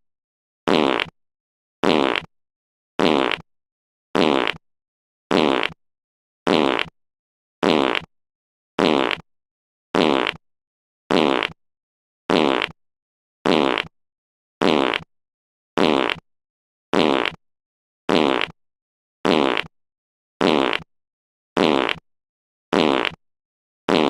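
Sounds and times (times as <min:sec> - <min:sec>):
fart sound effect: 0:00.7 - 0:01.1, 0:01.8 - 0:02.3, 0:03.0 - 0:03.4, 0:04.2 - 0:04.6, 0:05.3 - 0:05.8, 0:06.5 - 0:06.9, 0:07.6 - 0:08.1, 0:08.8 - 0:09.2, 0:10.0 - 0:10.4, 0:11.1 - 0:11.6, 0:12.3 - 0:12.8, 0:13.5 - 0:13.9, 0:14.6 - 0:15.1, 0:15.8 - 0:16.2, 0:16.9 - 0:17.4, 0:18.1 - 0:18.6, 0:19.3 - 0:19.7, 0:20.4 - 0:20.9, 0:21.6 - 0:22.0, 0:22.7 - 0:23.2.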